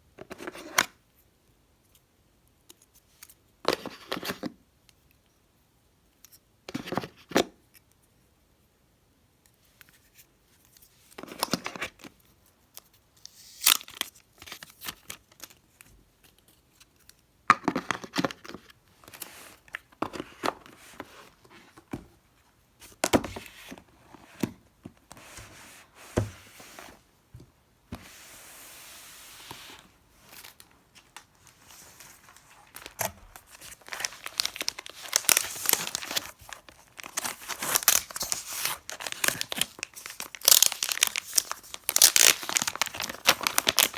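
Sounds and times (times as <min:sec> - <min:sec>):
paper and plastic wrapping tearing: 0:32.3 - 0:43.9.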